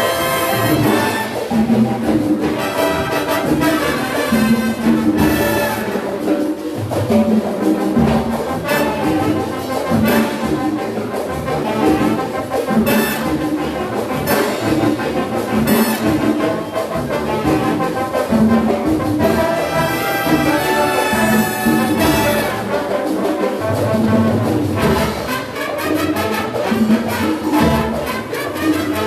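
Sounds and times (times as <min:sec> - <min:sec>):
latin big band playing: 0:00.0 - 0:29.0
trumpets and trombones: 0:00.0 - 0:29.0.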